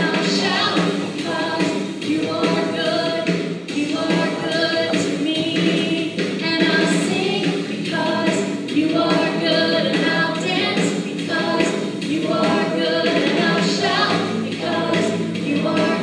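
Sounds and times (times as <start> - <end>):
choir singing a hymn: 7.8 - 16.0.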